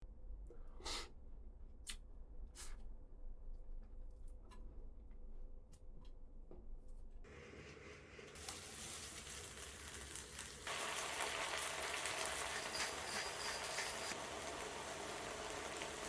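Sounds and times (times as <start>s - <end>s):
shrimp sizzling in hot oil: 8.4s - 16.0s.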